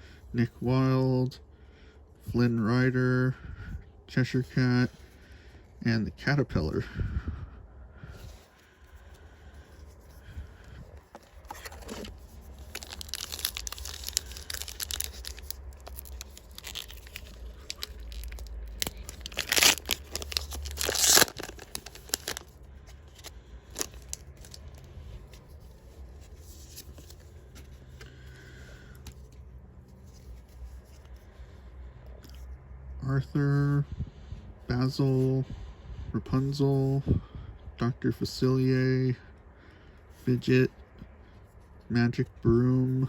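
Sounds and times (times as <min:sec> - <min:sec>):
cards and wrapper rustling: 0:08.2 - 0:31.4
loud wrapper rips: 0:10.2 - 0:24.9
wrapper tearing and crinkling: 0:11.3 - 0:24.9.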